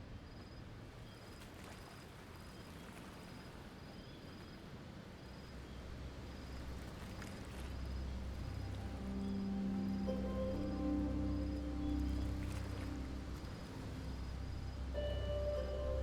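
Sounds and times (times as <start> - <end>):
faint outdoor noise: 0.0 - 16.0
background music: 6.6 - 16.0.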